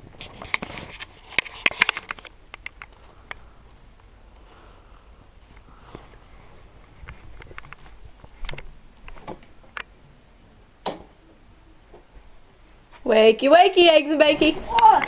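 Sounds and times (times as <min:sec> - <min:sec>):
soft rustling of handling: 0:00.0 - 0:09.8.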